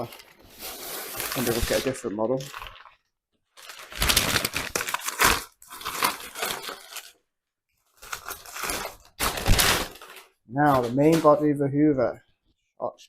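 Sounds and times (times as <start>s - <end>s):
packaging crinkling and tearing: 0.0s - 7.2s, 7.9s - 11.4s.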